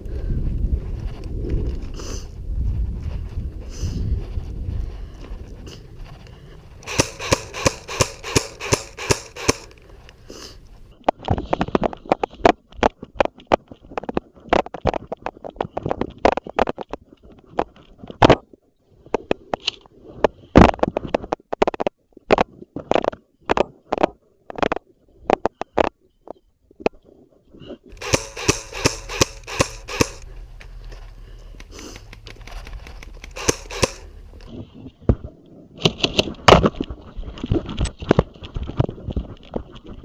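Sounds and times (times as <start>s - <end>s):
airsoft guns firing: 6.8s - 9.8s, 27.9s - 30.8s, 31.4s - 34.4s.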